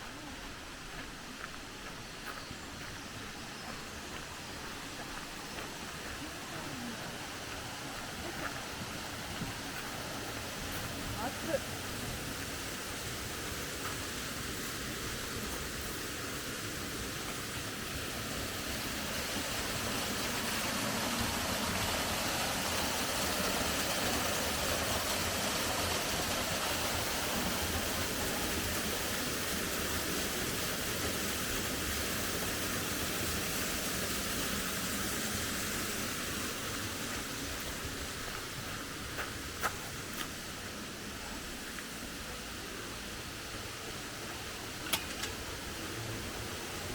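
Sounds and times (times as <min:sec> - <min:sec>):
waterfall rushing: 0:00.0 - 0:46.9.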